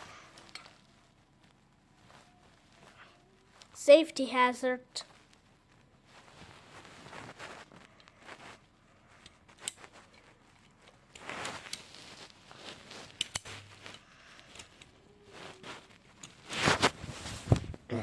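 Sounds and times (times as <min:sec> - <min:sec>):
rustling: 0:00.0 - 0:03.8, 0:05.0 - 0:17.9.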